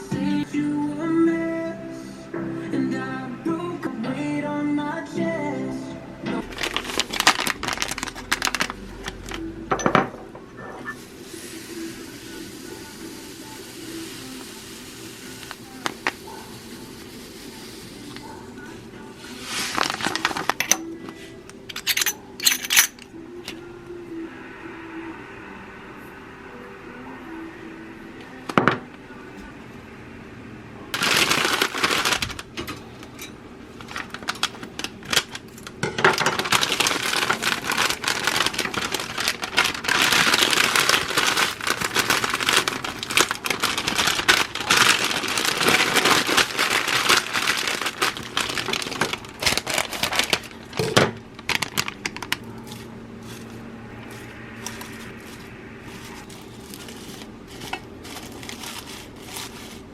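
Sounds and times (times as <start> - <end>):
plastic packaging crinkling: 6.4 - 9.5, 13.6 - 20.9, 31.0 - 33.1, 33.7 - 59.9.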